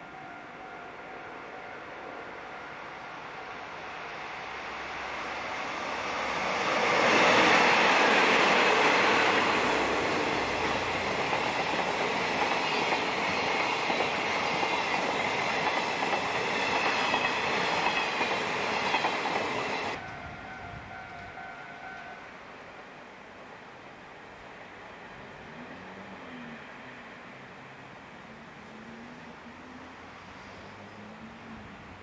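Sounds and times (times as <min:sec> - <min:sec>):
train wheels rumbling on rails: 0:04.5 - 0:21.4.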